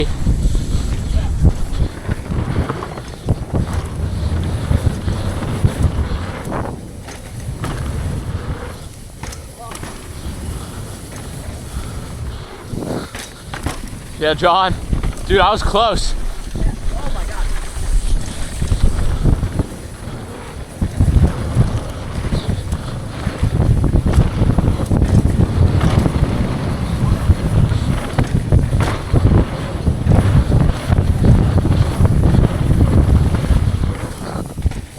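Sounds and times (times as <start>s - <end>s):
bike knocks and rattles: 0.0s - 34.9s
wind rushing over microphone: 0.0s - 34.9s.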